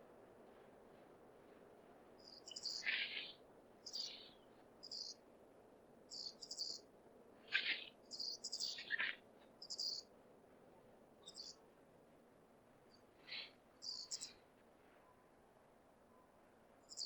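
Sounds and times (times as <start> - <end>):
flying squirrel squeaking calls: 2.5 - 3.0.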